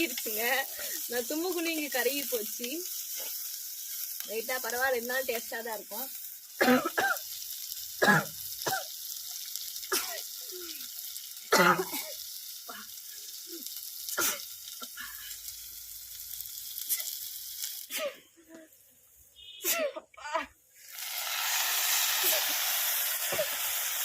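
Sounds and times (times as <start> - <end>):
food sizzling in a pan: 0.0 - 19.8, 20.7 - 24.0
person sneezing: 17.9 - 18.3.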